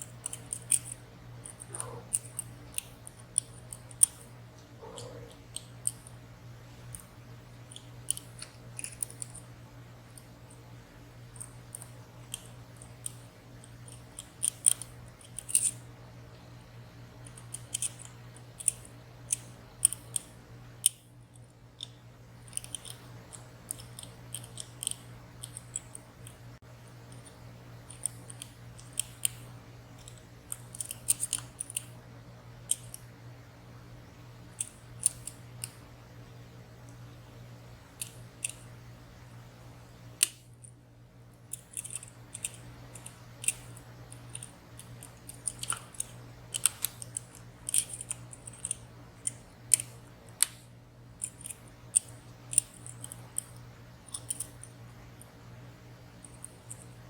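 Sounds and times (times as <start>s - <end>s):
steady low hum: 0.0s - 57.0s
lock pick metallic clicks: 11.3s - 15.8s, 41.5s - 54.7s.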